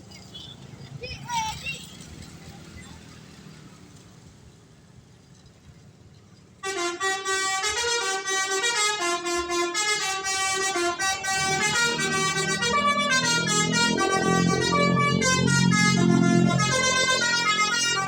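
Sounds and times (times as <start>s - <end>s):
multi-tone bus horn melody: 6.6s - 18.0s.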